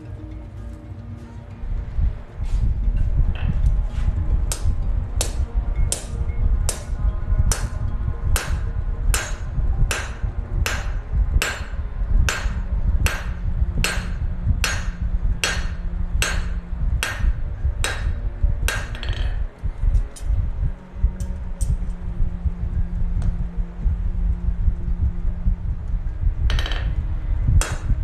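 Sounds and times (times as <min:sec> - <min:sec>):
hammer striking steel on anvil: 0:04.5 - 0:06.9, 0:07.5 - 0:07.8, 0:08.4 - 0:19.4, 0:26.5 - 0:26.9, 0:27.6 - 0:27.9.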